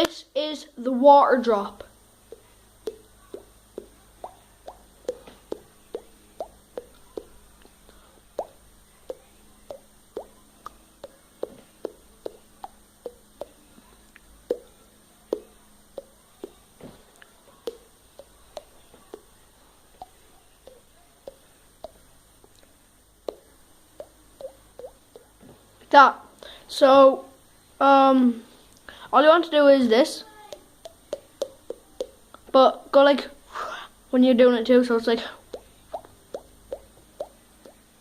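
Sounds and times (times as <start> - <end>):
mouth-made water-drop plops: 8.4 - 13.6, 14.5 - 14.7, 23.3 - 25.4, 35.5 - 37.8.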